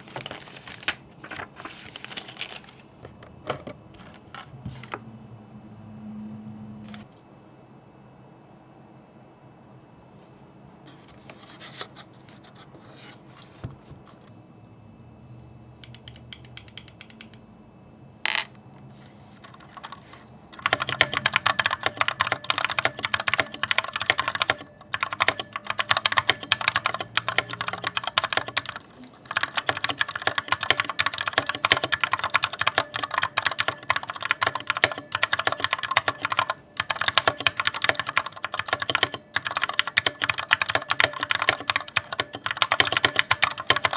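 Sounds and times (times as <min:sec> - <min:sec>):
mechanical keyboard typing: 0:15.8 - 0:17.4, 0:19.4 - 0:43.9.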